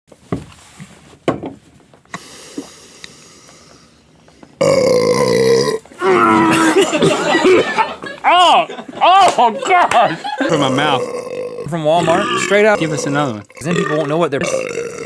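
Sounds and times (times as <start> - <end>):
man burping loudly: 4.6 - 7.2, 10.4 - 15.0.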